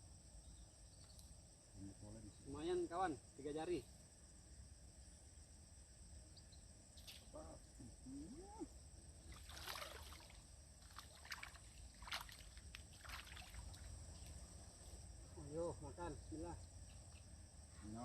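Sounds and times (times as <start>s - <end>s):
crickets trilling: 0.0s - 18.0s
water splashing and sloshing: 9.2s - 14.4s.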